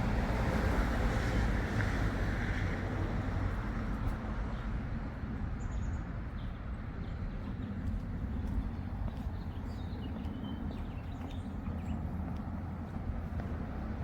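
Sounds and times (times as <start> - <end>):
small birds chirping: 8.4 - 12.4.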